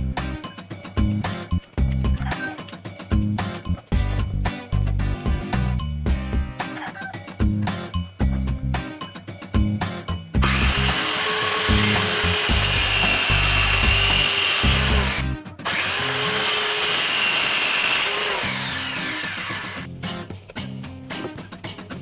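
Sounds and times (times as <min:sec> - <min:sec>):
music with steady beat: 0:00.0 - 0:10.8
power tool working: 0:10.4 - 0:19.9.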